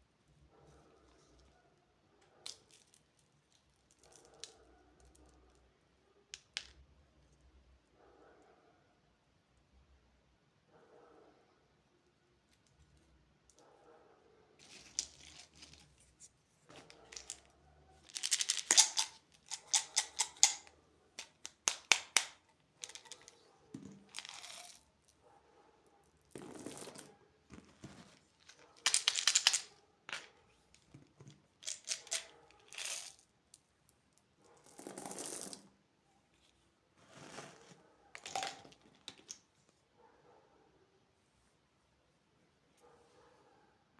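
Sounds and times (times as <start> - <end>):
candy rattling: 17.1 - 23.4, 24.0 - 24.9, 28.4 - 29.7, 31.6 - 33.2.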